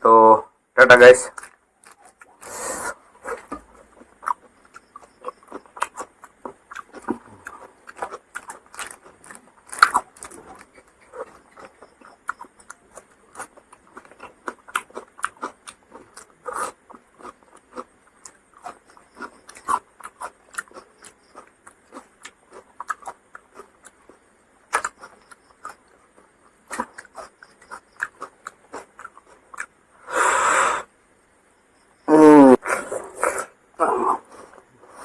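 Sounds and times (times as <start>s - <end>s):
person chewing with mouth noises: 1.3s - 30.9s.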